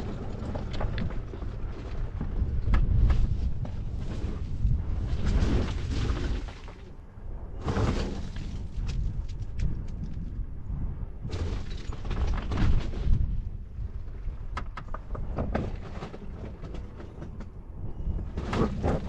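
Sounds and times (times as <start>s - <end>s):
vehicle driving on rough dirt track: 0.0s - 19.0s
knocks and rattles: 11.3s - 19.0s.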